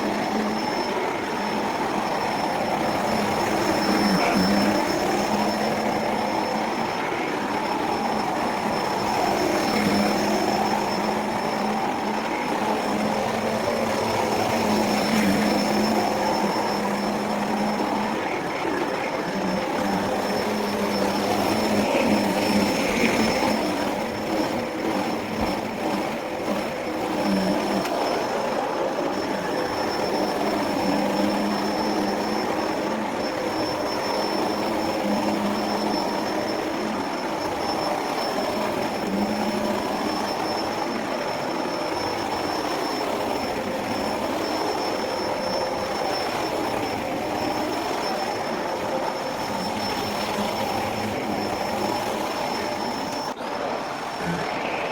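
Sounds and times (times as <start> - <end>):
vacuum cleaner running: 0.0 - 54.9.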